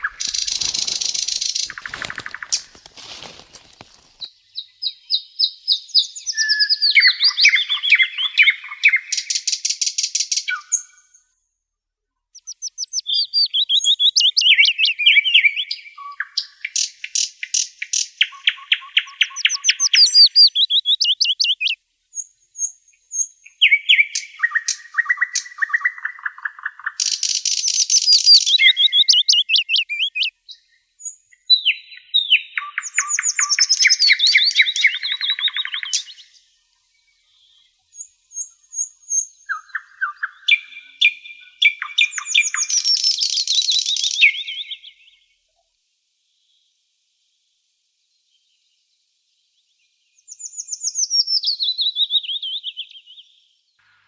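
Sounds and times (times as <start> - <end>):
songbird singing trills: 0.0 - 11.3, 12.4 - 45.6, 49.7 - 53.8.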